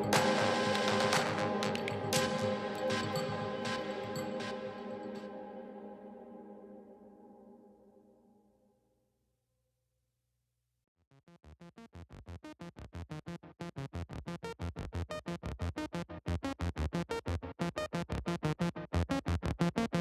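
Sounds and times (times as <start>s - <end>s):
electronic music with fast beat: 0.0s - 5.6s.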